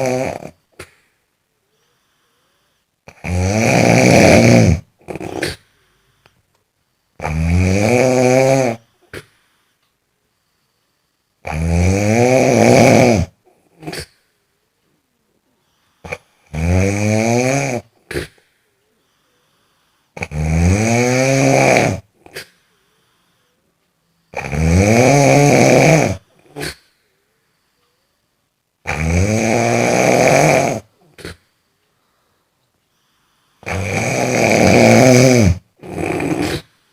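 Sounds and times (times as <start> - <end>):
loud snoring: 0.0 - 0.6, 3.1 - 5.7, 7.2 - 9.3, 11.4 - 14.1, 16.0 - 18.5, 20.1 - 22.5, 24.3 - 26.8, 28.8 - 31.4, 33.5 - 36.8.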